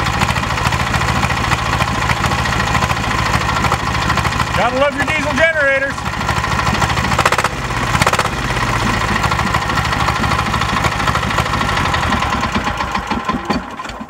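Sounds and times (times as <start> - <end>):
diesel generator engine running: 0.0 - 14.0.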